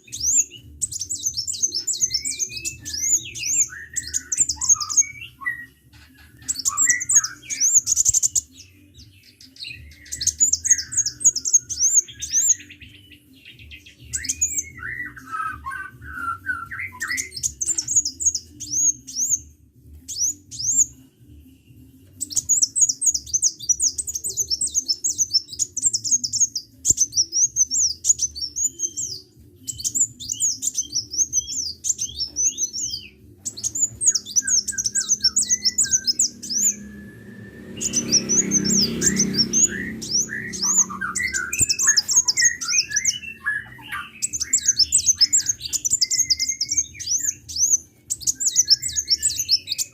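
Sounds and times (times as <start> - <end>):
sunbird chirping: 33.5 - 49.9.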